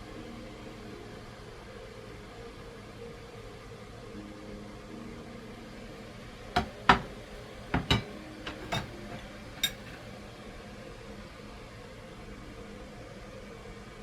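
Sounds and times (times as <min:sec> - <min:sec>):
steady background hum: 0:05.3 - 0:10.4
dishes and utensils clinking: 0:06.6 - 0:10.2.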